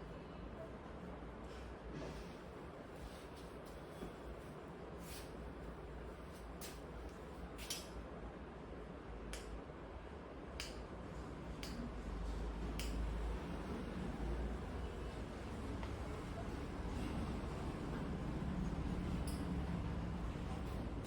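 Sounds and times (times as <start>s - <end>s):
low background hum: 0.0s - 21.0s
hands snapping clicks: 9.3s - 9.6s, 10.6s - 10.8s, 11.6s - 11.9s, 12.8s - 13.1s.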